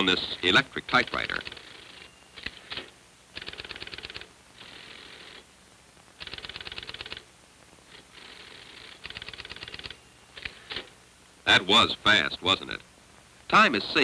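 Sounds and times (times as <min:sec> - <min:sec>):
typewriter whirring: 0:01.0 - 0:05.4, 0:06.2 - 0:07.3, 0:07.9 - 0:10.9
typewriter clicking: 0:03.4 - 0:04.3, 0:06.2 - 0:07.2, 0:09.0 - 0:10.8.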